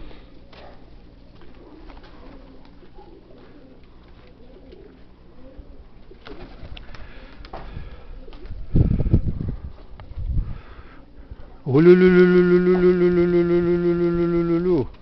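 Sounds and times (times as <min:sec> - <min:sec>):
pigeons cooing: 0:00.0 - 0:15.0
wind rumbling on microphone: 0:07.0 - 0:10.8.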